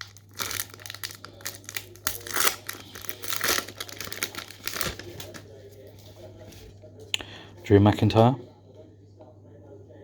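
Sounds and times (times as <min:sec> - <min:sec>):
wrapper tearing and crinkling: 0:00.0 - 0:05.4.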